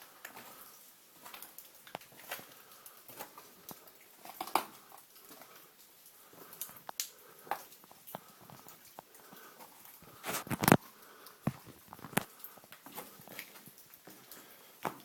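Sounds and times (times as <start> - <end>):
heavy mouth breathing: 4.7 - 13.4
footsteps crunching on lava rock: 7.5 - 15.0.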